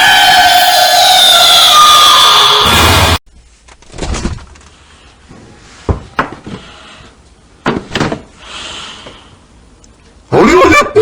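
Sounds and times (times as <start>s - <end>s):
sharp knocks and thumps: 5.9s - 6.6s, 7.6s - 8.3s.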